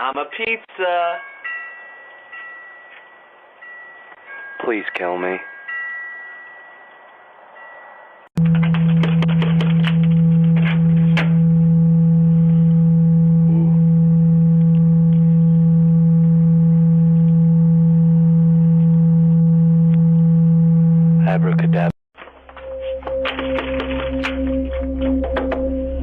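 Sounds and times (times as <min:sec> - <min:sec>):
loud steady low hum: 0:08.4 - 0:21.9.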